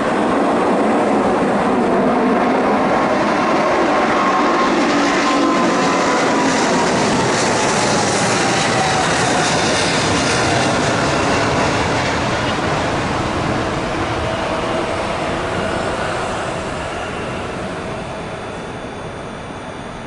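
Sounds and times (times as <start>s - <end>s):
jet engine roar: 0.0s - 20.0s
faint falling whine: 12.4s - 20.0s.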